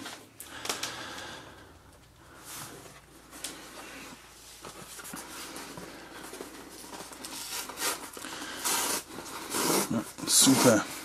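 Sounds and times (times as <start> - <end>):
cardboard parcel scraping and rustling: 3.8 - 11.0.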